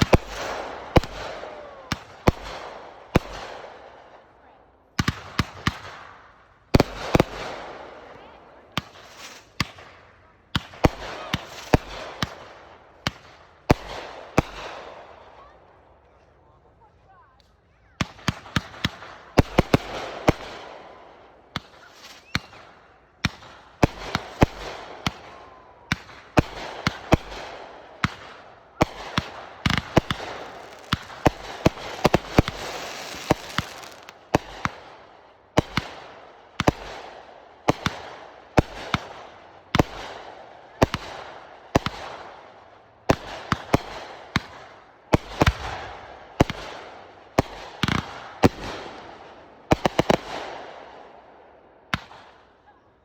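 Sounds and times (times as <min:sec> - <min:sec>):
fireworks bangs: 0:00.0 - 0:03.8, 0:18.0 - 0:35.0
fireworks crackling and fizzing: 0:00.0 - 0:03.9, 0:06.8 - 0:14.7, 0:17.5 - 0:40.2.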